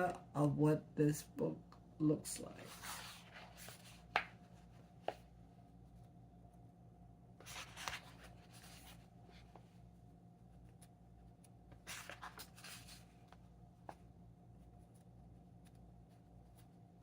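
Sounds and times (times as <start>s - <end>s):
faint low hum: 0.0s - 17.0s
book pages turning: 2.5s - 5.2s, 7.4s - 9.7s, 11.7s - 14.0s.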